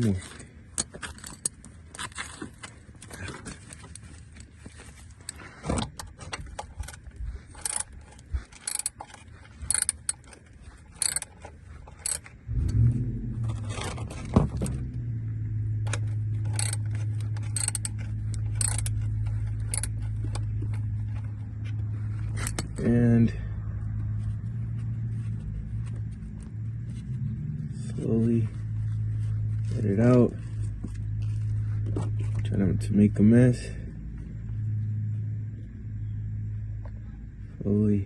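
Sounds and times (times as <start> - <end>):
steady low hum: 0.0 - 38.0
ratchet clinking against metal: 6.5 - 12.3, 16.4 - 21.3, 22.2 - 22.9.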